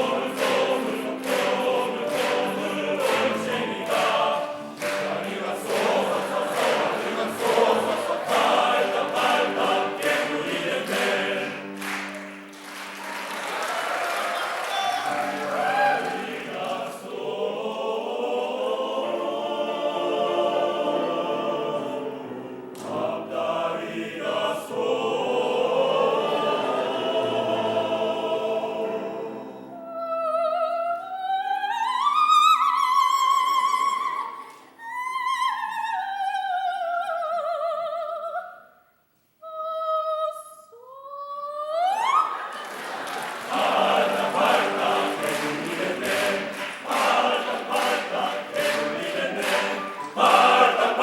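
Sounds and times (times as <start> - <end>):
choir singing sustained chords: 0.0 - 12.6, 15.4 - 30.8, 42.5 - 51.0.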